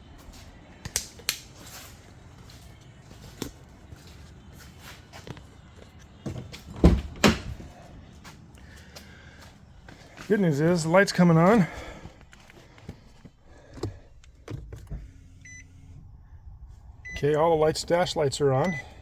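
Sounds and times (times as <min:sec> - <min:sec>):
car door shutting: 0:13.6 - 0:16.0.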